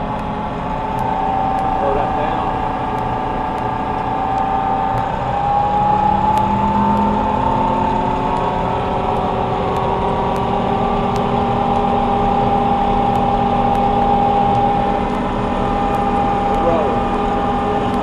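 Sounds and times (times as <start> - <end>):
combine harvester running: 0.0 - 18.0.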